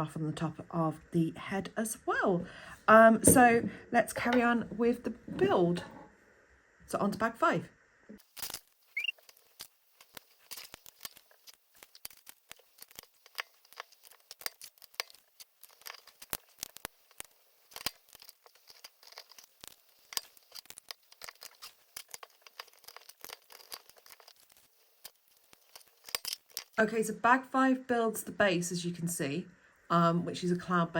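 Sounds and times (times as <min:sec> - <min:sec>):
plastic bags rustling: 0:08.2 - 0:26.8
plastic pieces clicking: 0:08.2 - 0:26.8.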